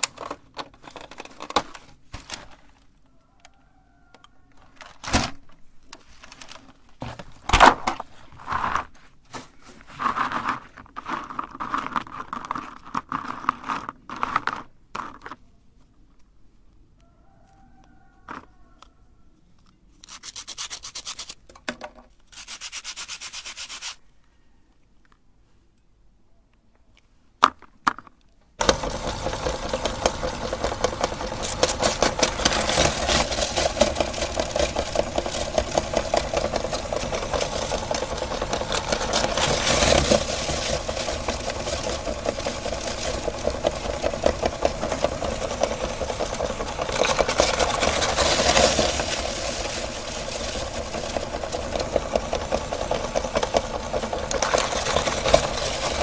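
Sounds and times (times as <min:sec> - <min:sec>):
electric meat grinder running: 0:28.6 - 0:56.0.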